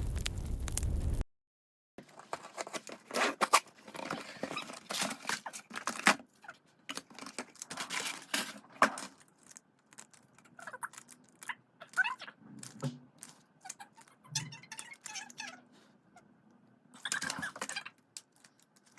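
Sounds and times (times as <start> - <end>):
low rumbling noise: 0.0 - 1.2
shrink-wrap and paper crinkling: 2.1 - 15.5.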